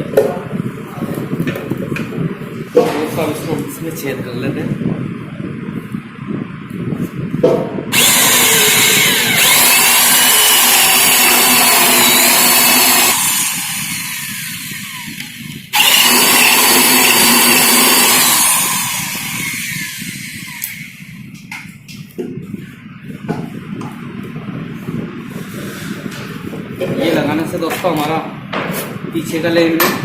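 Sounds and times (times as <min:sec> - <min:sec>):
electric drill boring wood: 0:07.9 - 0:21.1.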